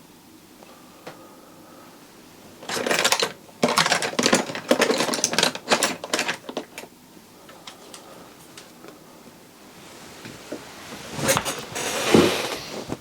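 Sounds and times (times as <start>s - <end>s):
metal tools clattering: 2.6s - 6.9s.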